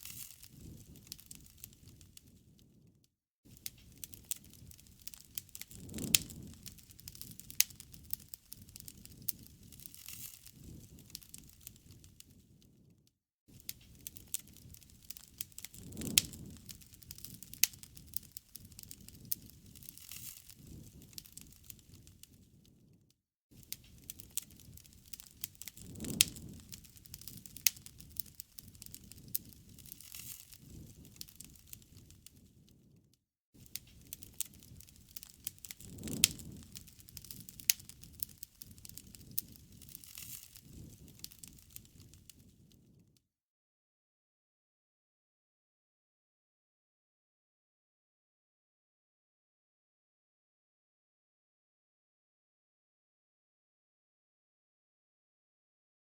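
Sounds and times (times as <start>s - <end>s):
bonfire flames rumbling: 0.0s - 2.9s, 3.5s - 33.0s, 33.6s - 43.1s
fire crackling and popping: 0.0s - 43.2s.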